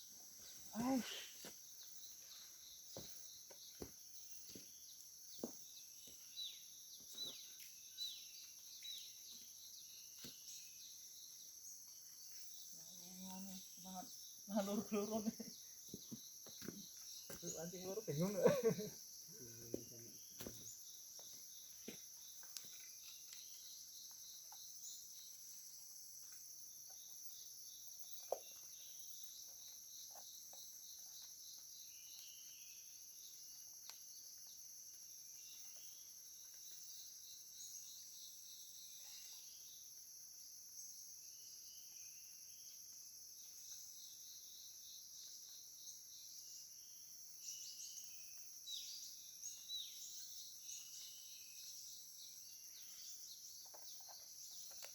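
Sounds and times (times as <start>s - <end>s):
insect chorus: 0.0s - 54.9s
bird chirps: 40.8s - 54.9s.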